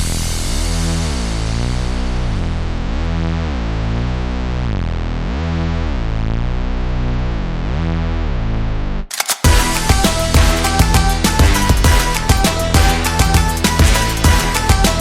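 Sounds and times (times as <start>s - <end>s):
steady bass: 0.0s - 15.0s.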